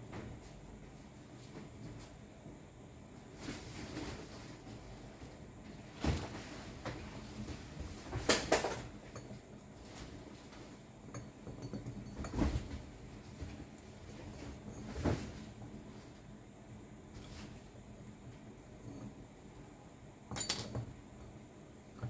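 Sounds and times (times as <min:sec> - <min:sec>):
tools clattering: 0:20.3 - 0:20.9.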